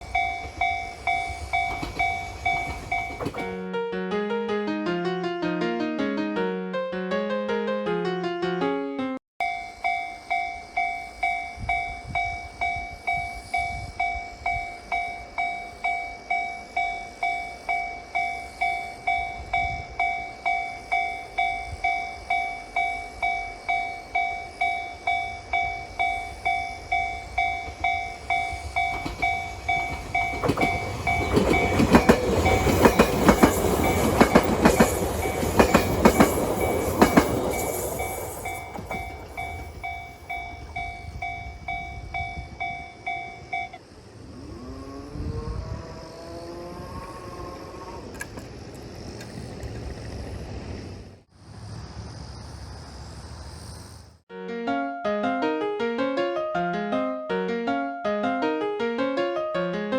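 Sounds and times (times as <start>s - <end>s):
level crossing warning bell: 0.0s - 3.6s, 9.4s - 43.8s
train wheels clacking over rails: 0.0s - 3.6s, 20.1s - 42.0s, 46.8s - 51.3s.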